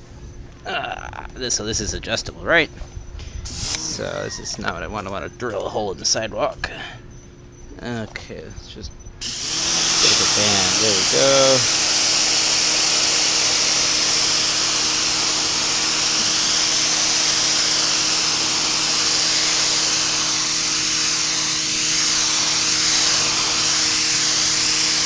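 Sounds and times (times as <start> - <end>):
pressure washer motor hum: 3.5 - 4.1, 9.2 - 25.0
water jet hissing on concrete: 9.2 - 25.0.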